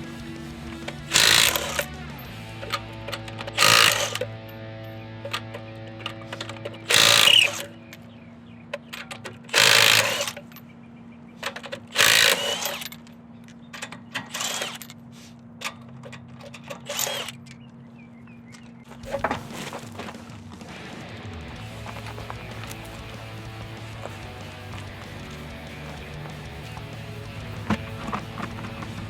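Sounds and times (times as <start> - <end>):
impact wrench hammering: 0.8 - 4.3, 6.6 - 7.7, 9.5 - 10.5, 11.5 - 12.9.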